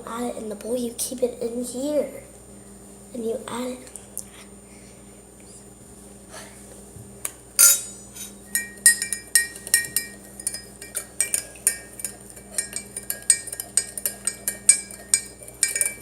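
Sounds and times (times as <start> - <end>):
spoon clinking in a cup: 8.5 - 16.0.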